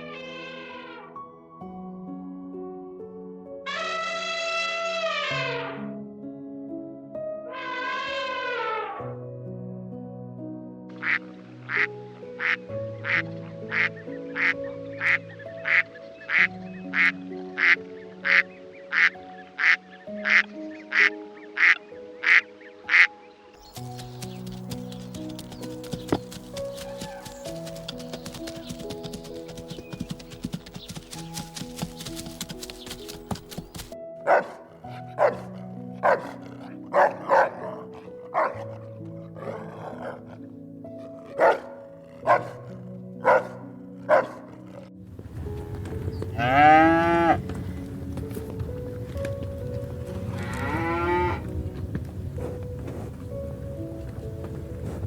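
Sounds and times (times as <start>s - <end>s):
background music with sustained chords: 0.0s - 55.0s
animal calling: 3.7s - 5.8s, 7.5s - 9.1s, 11.0s - 38.8s, 39.4s - 44.9s
dog barking: 34.2s - 38.7s, 39.4s - 40.4s, 41.2s - 44.6s.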